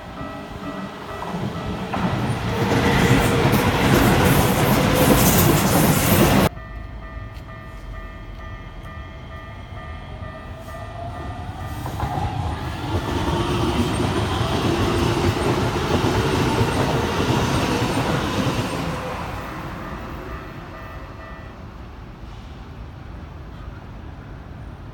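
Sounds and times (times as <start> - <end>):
level crossing warning bell: 0.0 - 3.9, 6.4 - 12.8, 18.5 - 21.8
trains passing: 0.0 - 24.9.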